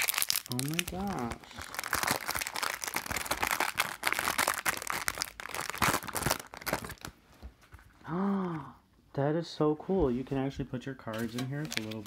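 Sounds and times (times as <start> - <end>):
plastic wrapping crinkling: 0.0 - 7.2, 11.1 - 12.0.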